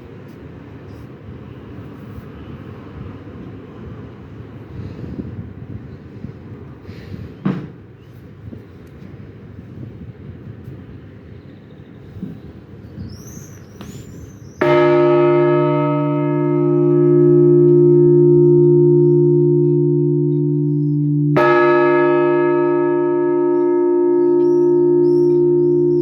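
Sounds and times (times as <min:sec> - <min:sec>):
large church bell tolling: 0:14.6 - 0:26.0.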